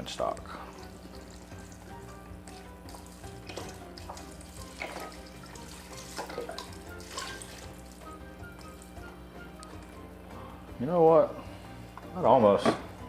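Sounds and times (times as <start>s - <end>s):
liquid pouring and splashing into pot: 0.7s - 9.0s.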